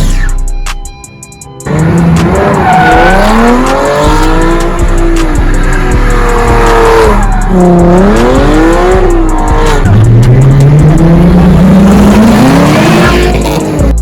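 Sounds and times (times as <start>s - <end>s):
car engine revving: 1.6s - 14.0s
tyre squeal: 2.4s - 4.6s.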